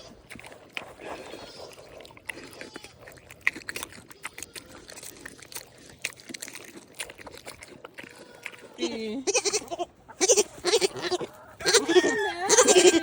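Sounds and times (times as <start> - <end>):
pigs crunching and chewing: 0.0 - 13.0.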